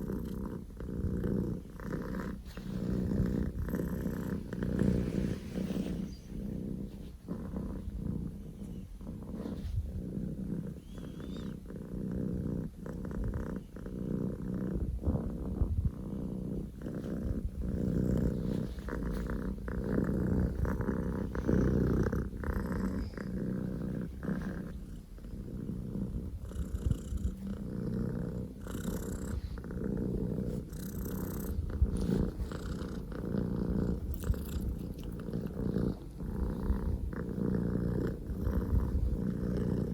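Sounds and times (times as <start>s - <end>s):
kitten purring loudly: 0.0s - 39.9s.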